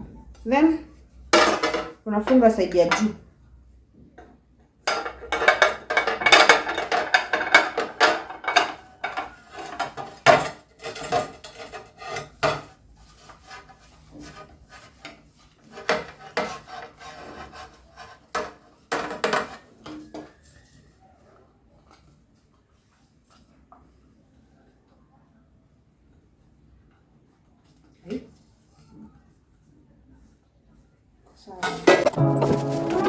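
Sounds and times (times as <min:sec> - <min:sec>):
kitchen items knocking and clattering: 0:01.3 - 0:03.2, 0:04.0 - 0:12.8, 0:18.4 - 0:20.3, 0:31.6 - 0:33.0.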